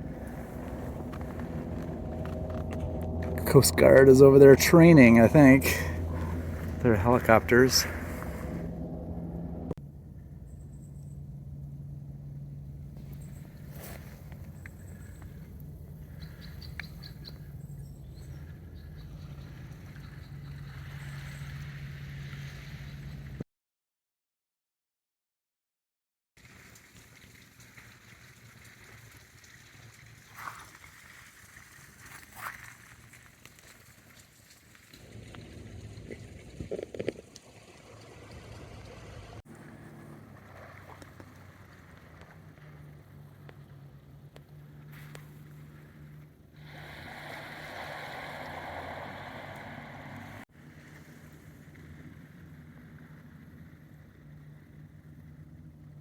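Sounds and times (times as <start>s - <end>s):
boat motor humming: 0.0s - 23.4s, 38.0s - 56.0s
distant engine drone: 0.0s - 23.4s, 35.0s - 56.0s.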